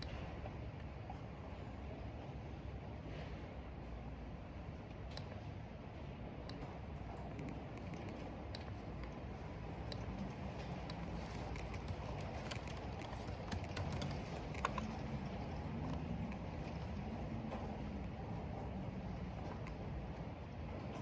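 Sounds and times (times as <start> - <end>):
wind: 0.0 - 21.0
keyboard keys clicking: 9.9 - 15.0.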